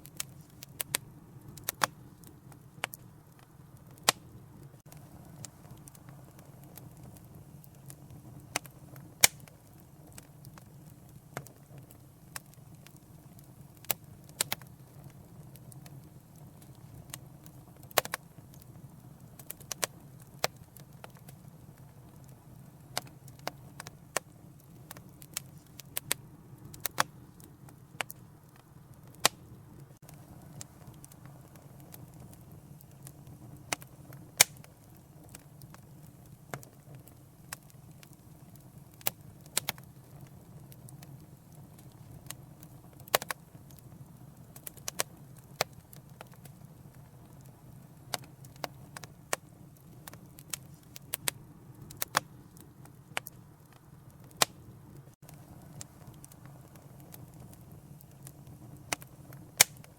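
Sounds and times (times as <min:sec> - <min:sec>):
low rumble of burning: 0:00.0 - 0:59.9
wood fire crackling: 0:00.0 - 0:59.9.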